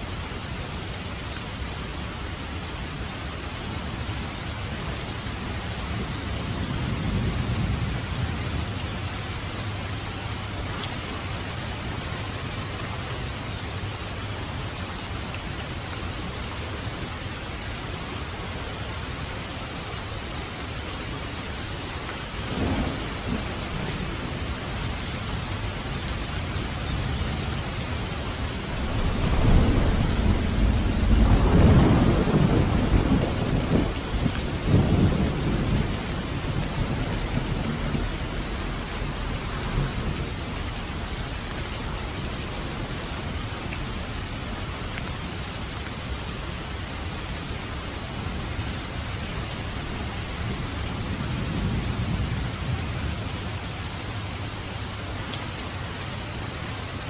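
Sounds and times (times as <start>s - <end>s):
steady rain hiss: 0.0s - 57.0s
thunder rumbling: 22.4s - 44.4s, 49.7s - 53.6s.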